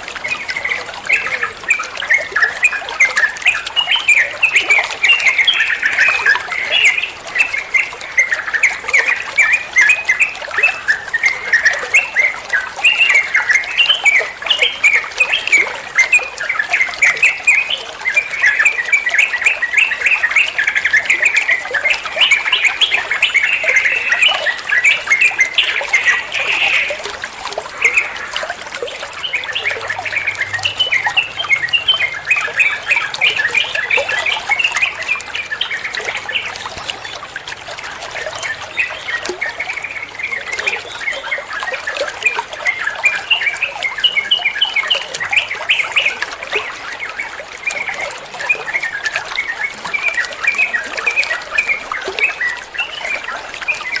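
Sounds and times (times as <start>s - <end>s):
bird singing chirping phrases: 0.2s - 54.0s.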